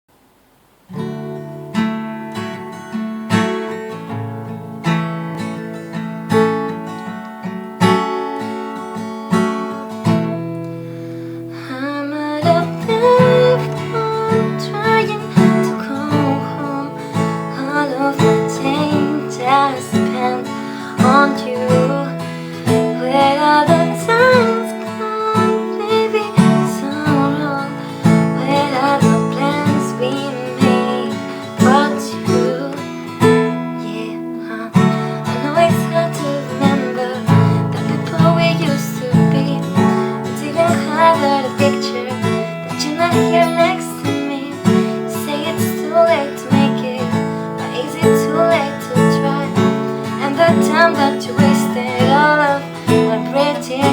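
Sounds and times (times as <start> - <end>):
acoustic guitar strumming: 0.9 - 53.9
person singing: 11.6 - 53.9.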